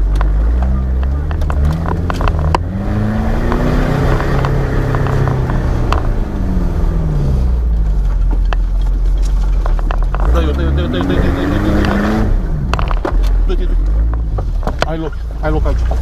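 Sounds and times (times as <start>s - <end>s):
sharp knocks and clicks: 0.0s - 6.2s, 8.0s - 11.1s, 12.7s - 16.0s
off-road vehicle engine revving: 0.0s - 16.0s.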